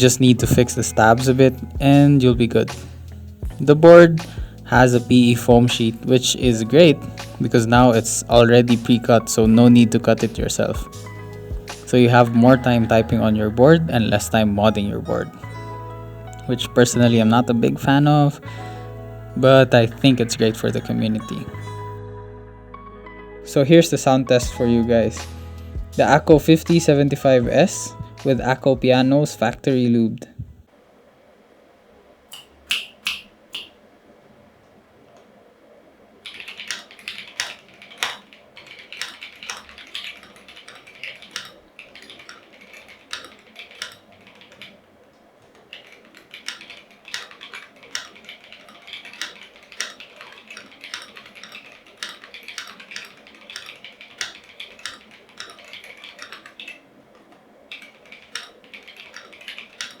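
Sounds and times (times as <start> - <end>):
mechanical keyboard typing: 36.2 - 60.0.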